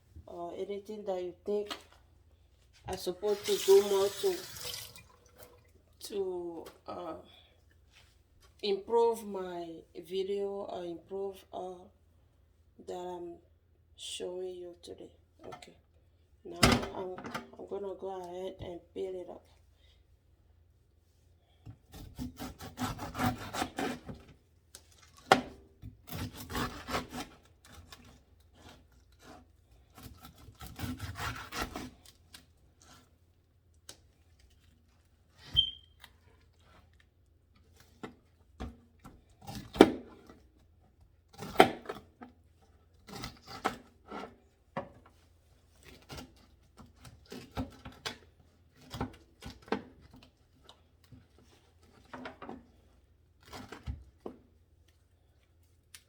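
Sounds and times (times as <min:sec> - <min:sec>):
knife scraping pineapple rind: 0:21.9 - 0:24.3, 0:26.0 - 0:33.1, 0:43.0 - 0:44.4.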